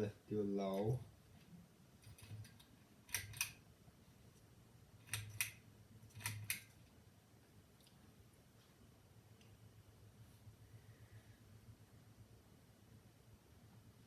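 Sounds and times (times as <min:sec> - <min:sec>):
pull-chain switch clicks: 0:02.0 - 0:03.6, 0:05.0 - 0:06.8.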